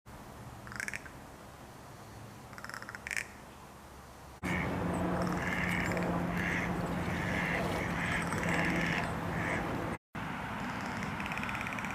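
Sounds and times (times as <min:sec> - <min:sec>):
crow rattle call: 0:00.6 - 0:01.1, 0:02.5 - 0:03.3, 0:04.5 - 0:09.6, 0:10.8 - 0:11.9
steady low hum: 0:04.4 - 0:10.0.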